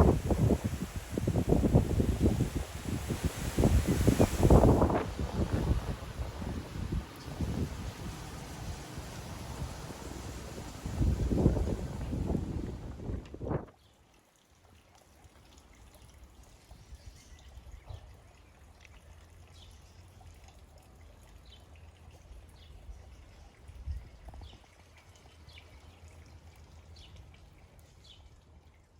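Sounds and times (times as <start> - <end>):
low wind rumble on microphone: 0.0 - 13.8
rainwater trickling and dripping: 0.0 - 28.9.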